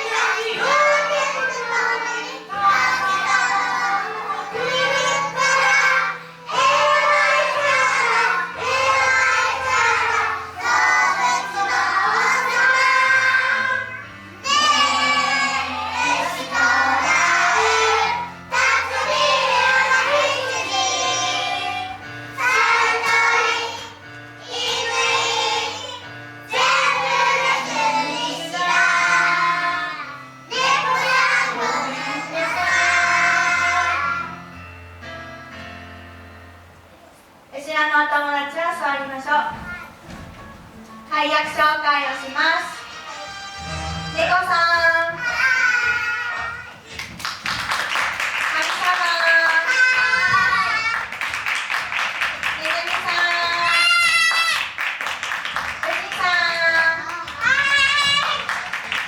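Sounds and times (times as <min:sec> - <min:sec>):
children singing: 0:00.0 - 0:34.4, 0:45.1 - 0:47.0, 0:49.4 - 0:52.8
instrumental accompaniment: 0:00.0 - 0:37.5, 0:39.5 - 0:59.0.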